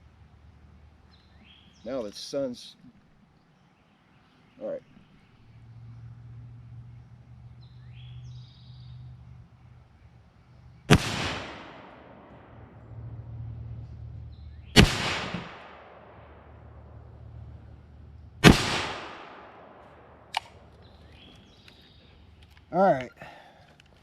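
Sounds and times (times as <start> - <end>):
rifle shots with echo: 10.9 - 12.8, 14.8 - 17.0, 18.4 - 20.9.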